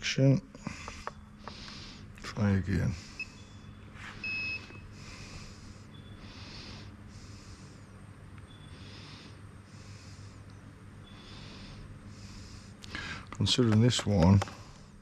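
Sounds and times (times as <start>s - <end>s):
steady low hum: 0.0s - 15.0s
hissing breaths: 0.5s - 13.4s
faint short beeps: 3.2s - 4.9s.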